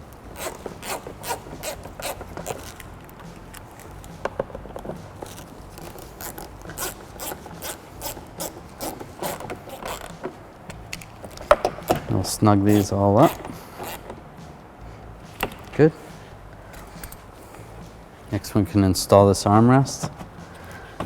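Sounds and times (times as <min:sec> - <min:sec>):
hand ratchet clicking: 0:00.1 - 0:04.4, 0:05.2 - 0:14.2.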